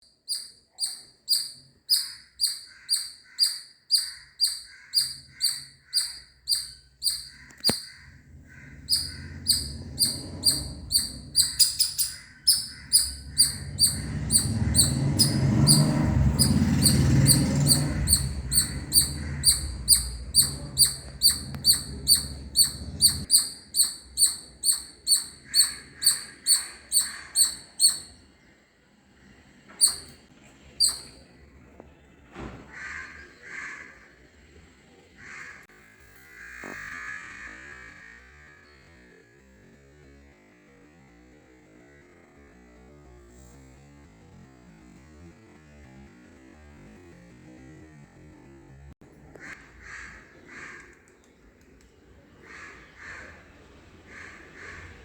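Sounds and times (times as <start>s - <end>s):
squirrel chirping: 0.0s - 28.2s, 29.8s - 30.2s, 30.8s - 31.2s
low rumble: 7.1s - 23.3s.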